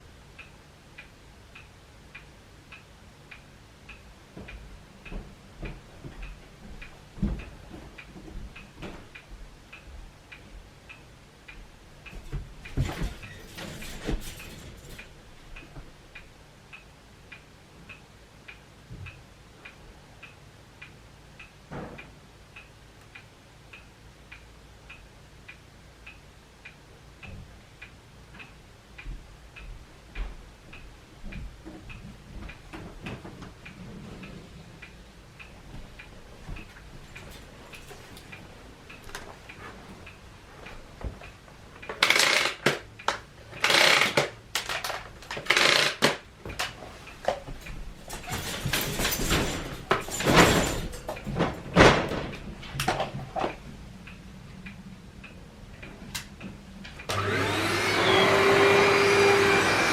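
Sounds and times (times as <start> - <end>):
clock ticking: 0.0 - 12.8, 14.4 - 48.8
rustling noise: 31.3 - 41.9.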